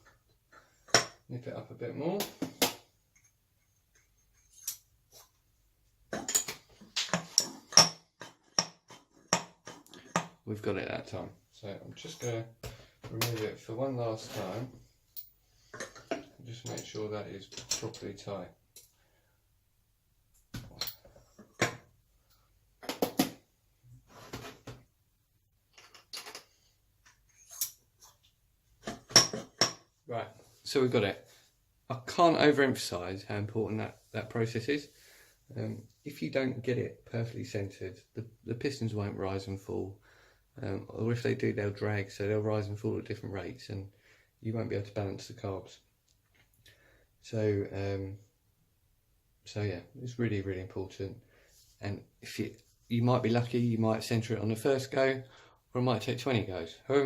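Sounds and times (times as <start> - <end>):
metal parts and tools clinking: 3.1 - 5.3, 6.1 - 8.7, 12.0 - 12.5, 15.1 - 18.2, 25.7 - 29.8.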